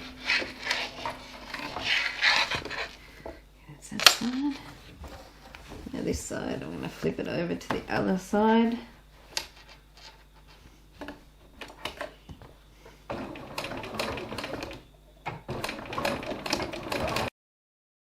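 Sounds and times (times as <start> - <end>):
sewing machine stitching: 13.1 - 17.3.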